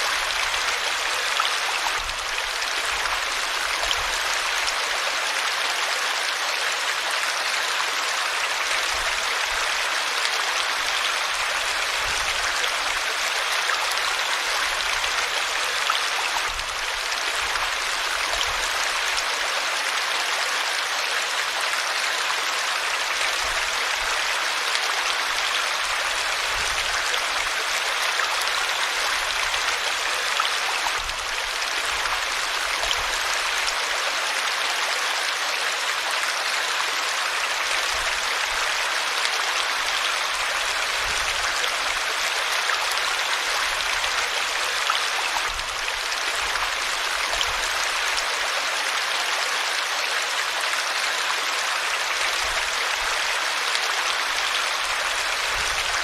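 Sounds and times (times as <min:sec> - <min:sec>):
river water flowing over rocks: 0:00.0 - 0:56.0.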